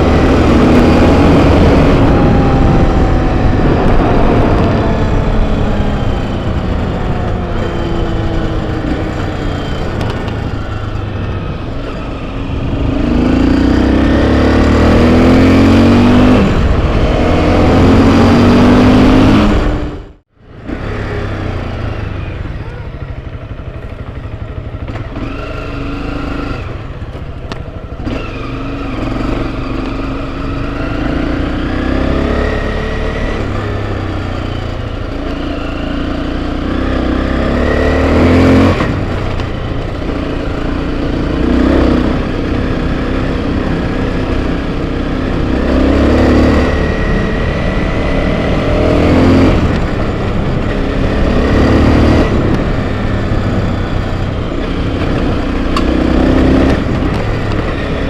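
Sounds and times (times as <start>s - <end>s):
low rumble: 0.0s - 15.3s
motorcycle engine revving: 0.0s - 58.0s.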